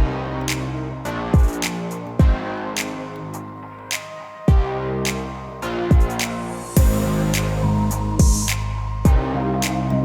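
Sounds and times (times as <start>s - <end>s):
electronic music with beat: 0.0s - 10.0s
deep kick drum: 1.4s - 1.6s, 2.2s - 2.4s, 4.5s - 4.7s, 5.9s - 6.2s, 6.8s - 7.1s, 8.2s - 9.4s.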